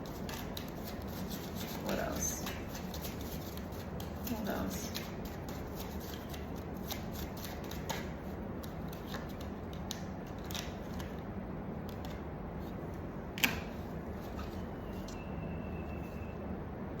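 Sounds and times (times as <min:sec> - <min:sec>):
cards being shuffled: 0:00.1 - 0:11.2.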